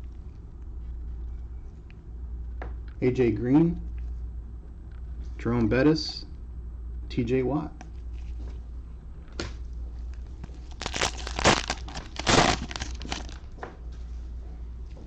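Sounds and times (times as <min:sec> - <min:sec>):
steady low hum: 0:00.0 - 0:15.0
cellophane crinkling and tearing: 0:10.1 - 0:13.5.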